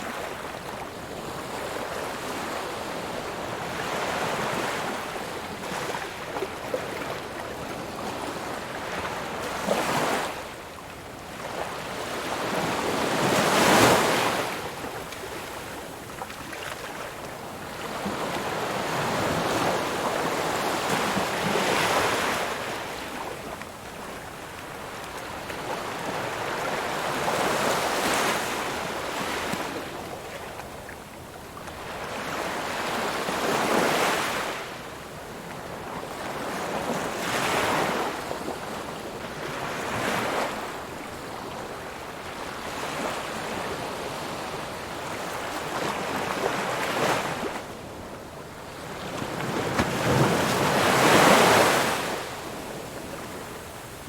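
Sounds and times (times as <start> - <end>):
ocean waves breaking on shore: 31.7 - 54.0.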